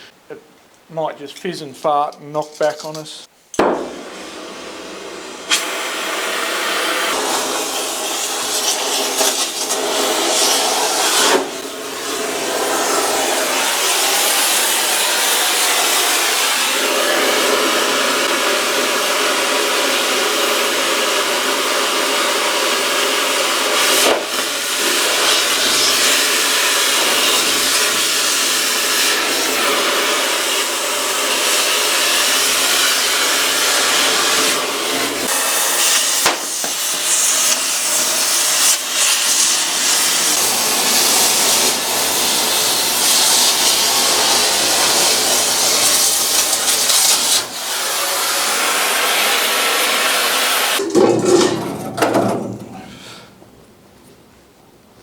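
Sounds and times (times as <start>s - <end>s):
sharp pops: 2.4s - 4.0s, 36.0s - 37.6s
cutting torch hissing: 3.6s - 50.8s.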